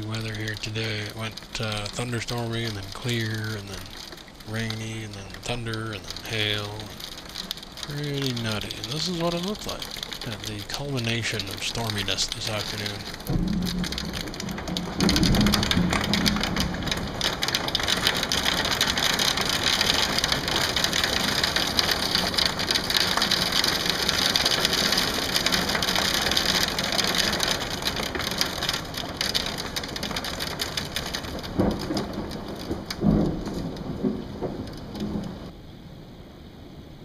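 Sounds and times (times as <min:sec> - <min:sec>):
hail and rain pelting down: 0:00.0 - 0:35.6
low thumps: 0:13.0 - 0:19.5.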